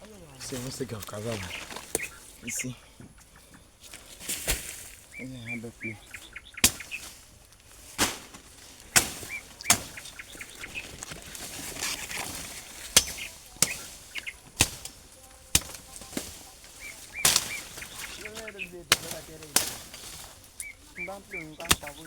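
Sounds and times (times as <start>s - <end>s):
bird chirps: 0.0s - 7.9s, 8.7s - 22.0s
sharp knocks or chops: 21.6s - 22.0s.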